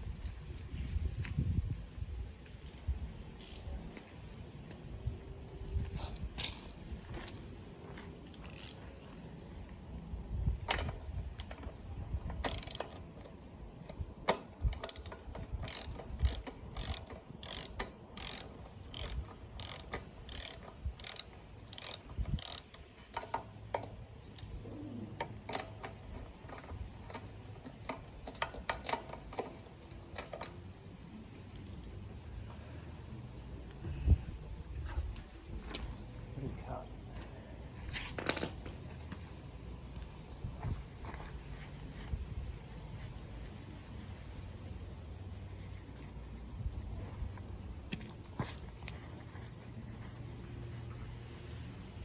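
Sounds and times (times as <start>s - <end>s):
ratchet wrench clicking: 2.6s - 3.7s, 6.4s - 7.4s, 8.2s - 9.1s, 12.3s - 13.0s, 14.6s - 23.5s.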